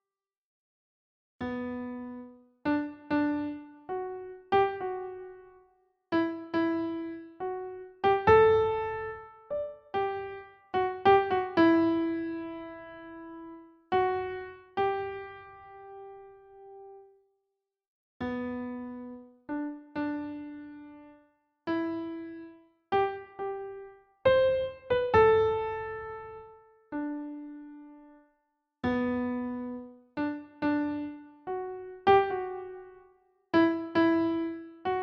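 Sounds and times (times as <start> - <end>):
slow piano melody: 1.4 - 17.1, 18.2 - 28.2, 28.8 - 35.0.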